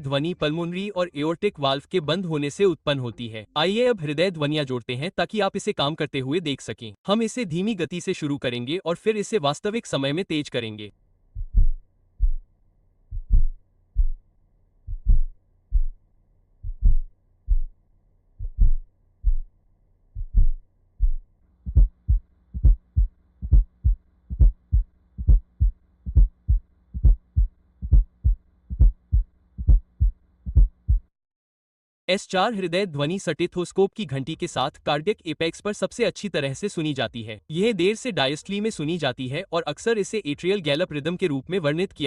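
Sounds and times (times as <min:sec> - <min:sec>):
heartbeat thumps: 0:11.4 - 0:12.5, 0:13.1 - 0:14.2, 0:14.9 - 0:16.0, 0:16.6 - 0:17.8, 0:18.4 - 0:19.5, 0:20.2 - 0:31.1.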